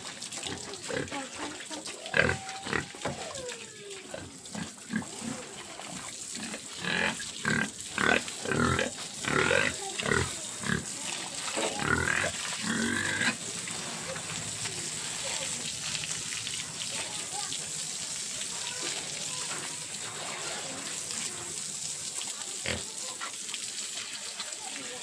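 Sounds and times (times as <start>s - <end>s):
pigs calling: 0.3s - 14.6s.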